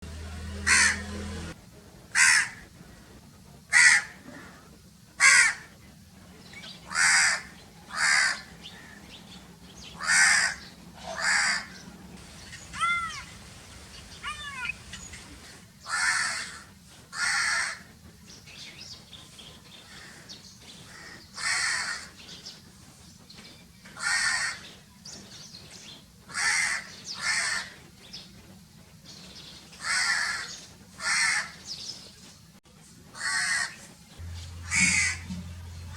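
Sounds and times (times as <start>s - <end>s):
crows cawing: 0.6s - 1.0s, 2.2s - 2.6s, 3.7s - 4.2s, 5.2s - 5.7s, 6.9s - 9.0s, 10.0s - 11.8s, 12.6s - 13.3s, 14.2s - 14.8s, 15.9s - 17.9s, 20.9s - 22.1s, 24.0s - 24.6s, 26.3s - 27.7s, 29.8s - 31.6s, 33.2s - 33.8s, 34.6s - 35.2s.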